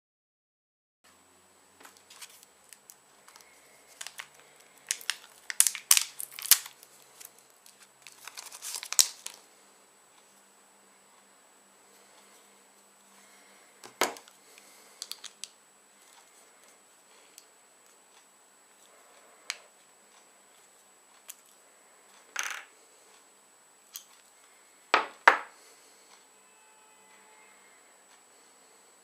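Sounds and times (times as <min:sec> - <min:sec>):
small parts clicking and tapping: 0:02.1 - 0:09.4, 0:15.0 - 0:15.5.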